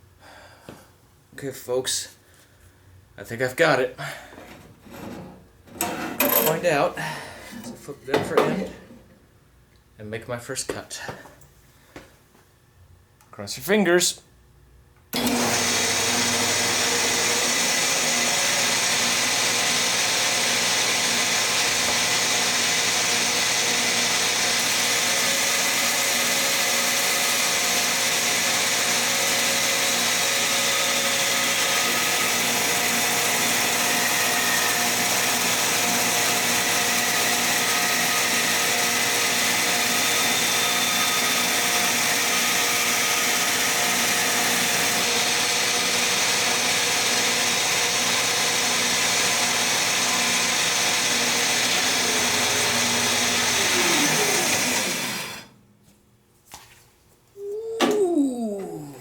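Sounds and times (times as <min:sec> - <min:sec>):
bandsaw cutting board: 0:04.2 - 0:09.2, 0:15.2 - 0:55.6, 0:57.4 - 0:58.9.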